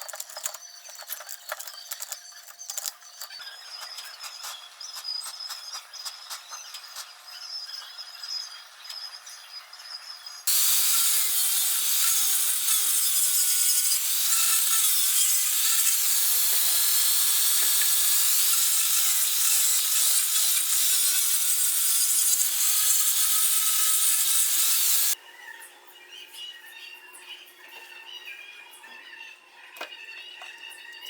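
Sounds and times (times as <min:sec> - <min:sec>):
power tool cutting: 0:10.5 - 0:25.2.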